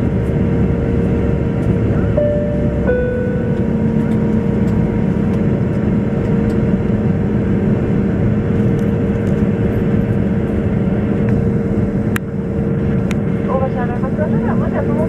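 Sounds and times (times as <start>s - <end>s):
airliner engine and airflow noise: 0.0s - 15.0s
constant tone: 0.3s - 7.5s.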